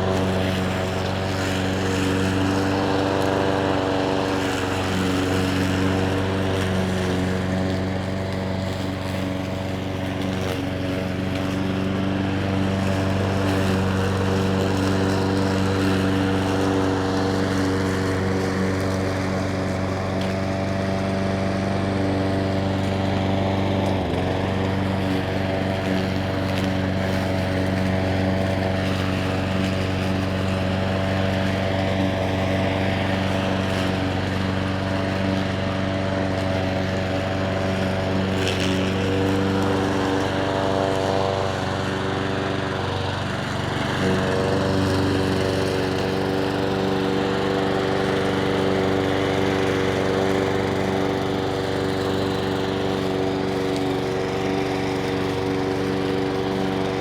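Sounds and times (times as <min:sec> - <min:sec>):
lawn mower engine running: 0:00.0 - 0:57.0.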